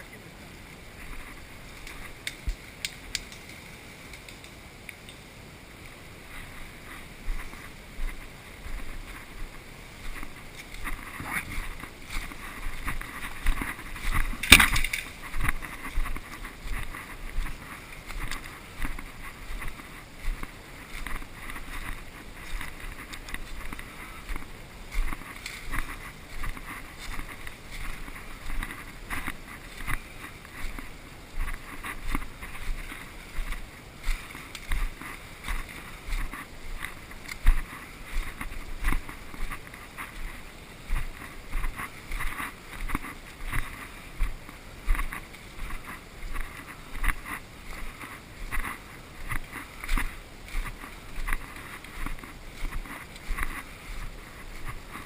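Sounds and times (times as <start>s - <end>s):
footsteps crunching through undergrowth: 0.7s - 4.6s, 5.7s - 55.0s
sharp crack: 14.4s - 15.1s.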